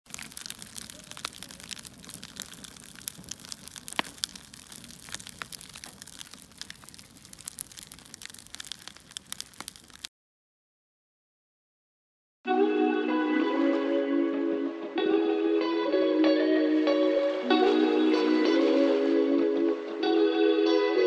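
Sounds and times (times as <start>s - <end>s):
wood fire crackling: 0.0s - 10.1s.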